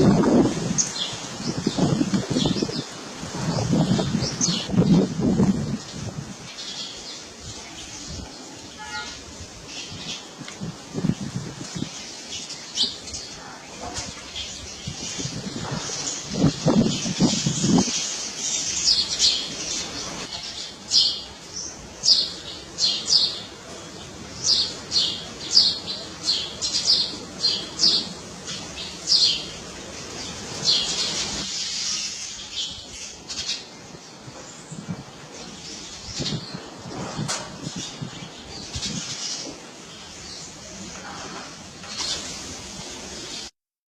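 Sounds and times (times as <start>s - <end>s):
small birds chirping: 5.7s - 40.7s.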